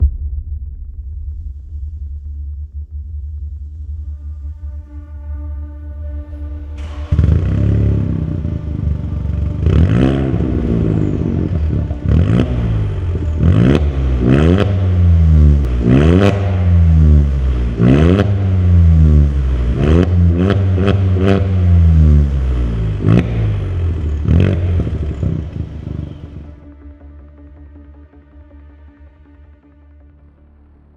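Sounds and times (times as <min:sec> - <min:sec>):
car engine revving: 0:06.0 - 0:26.6
exhaust pops and cracks: 0:06.4 - 0:14.8, 0:15.4 - 0:26.6.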